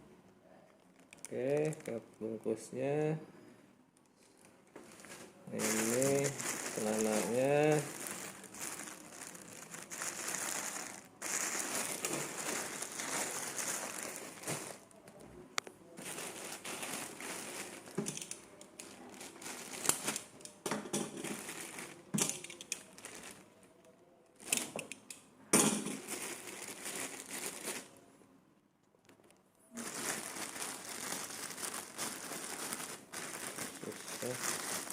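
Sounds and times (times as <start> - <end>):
plastic packaging crinkling: 0.6 - 2.2, 4.0 - 15.2, 15.9 - 23.6, 25.9 - 28.0, 29.7 - 34.9.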